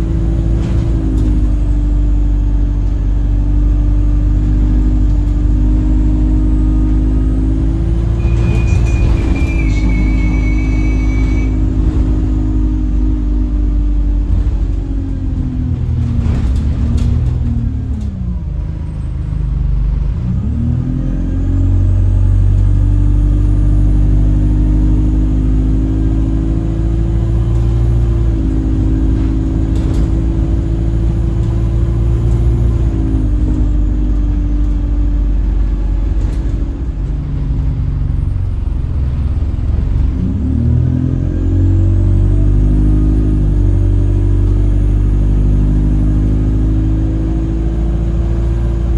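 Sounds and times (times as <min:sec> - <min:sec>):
bus diesel engine: 0:00.0 - 0:48.9
loud horn-like drone: 0:08.2 - 0:11.9.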